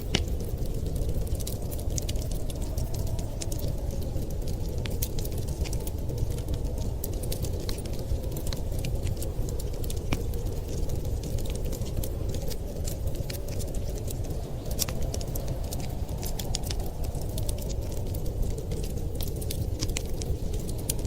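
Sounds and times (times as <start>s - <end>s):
low rumble of wind: 0.0s - 21.0s
wood fire crackling: 0.0s - 21.0s.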